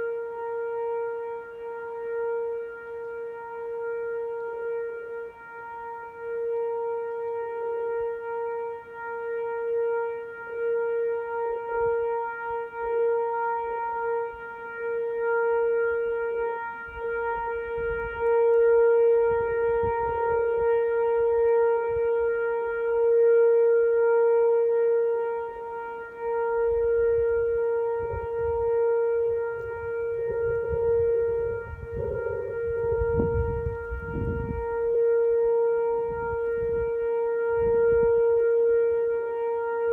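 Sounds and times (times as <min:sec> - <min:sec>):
warning siren steady tone: 0:00.0 - 0:39.9
low rumbling noise: 0:30.4 - 0:34.8.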